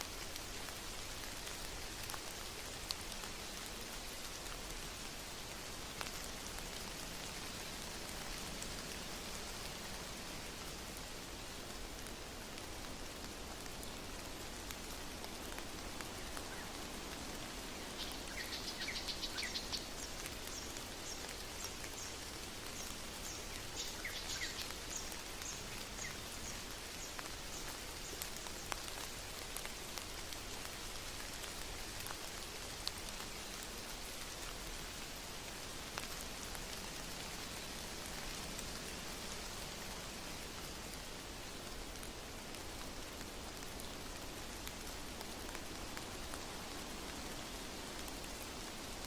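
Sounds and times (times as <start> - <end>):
steady rain falling: 0.0 - 49.0.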